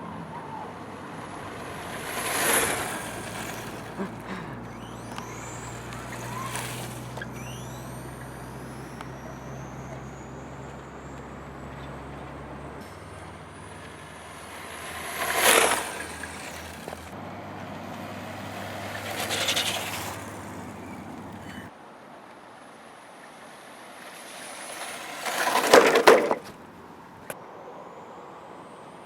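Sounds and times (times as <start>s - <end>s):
electric motor whine: 0.0s - 21.7s, 23.8s - 26.6s
rc car passing by: 0.0s - 21.8s, 22.4s - 29.0s.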